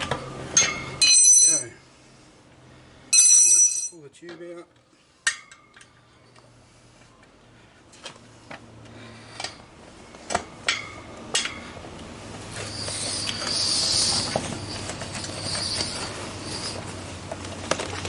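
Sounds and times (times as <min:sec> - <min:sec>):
metal tyre levers clinking on rim: 0:00.0 - 0:01.7
rough rubbing of rubber: 0:12.5 - 0:17.1.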